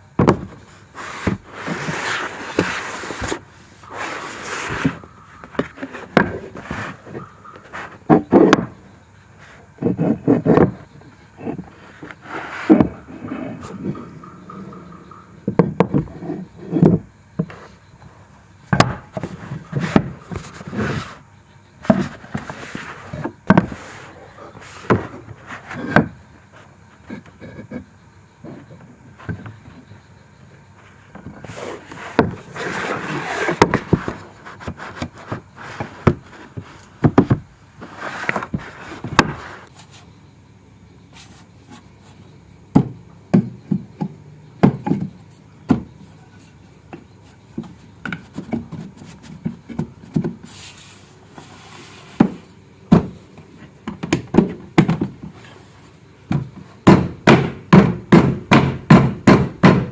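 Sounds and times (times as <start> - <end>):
wood knocking on wood: 0.2 - 0.6, 9.8 - 11.6, 13.7 - 17.6, 33.3 - 37.4, 42.7 - 46.0, 46.9 - 50.4, 52.1 - 55.4, 56.3 - 59.9
rough noise of working wood: 0.2 - 17.8, 18.7 - 30.0, 30.8 - 40.1, 47.2 - 59.9.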